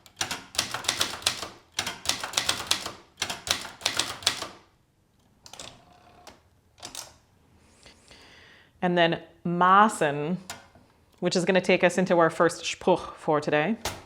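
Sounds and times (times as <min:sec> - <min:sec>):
typewriter keys clacking: 0:00.0 - 0:04.7, 0:05.5 - 0:07.2.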